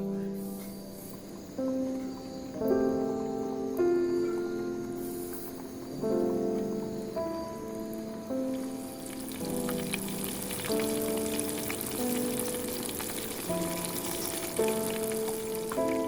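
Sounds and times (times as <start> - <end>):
background music of held chords: 0.0 - 16.0
food frying in hot oil: 8.5 - 16.0.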